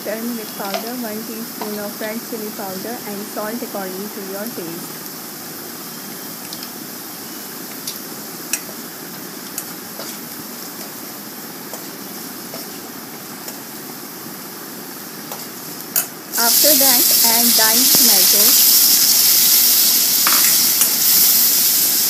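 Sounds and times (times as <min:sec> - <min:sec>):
food sizzling in oil: 0:00.0 - 0:22.0.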